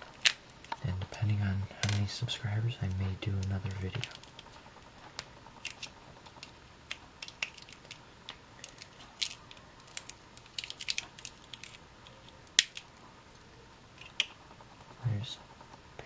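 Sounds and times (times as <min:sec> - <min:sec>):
battery casing clicking and crinkling: 0:05.2 - 0:13.0.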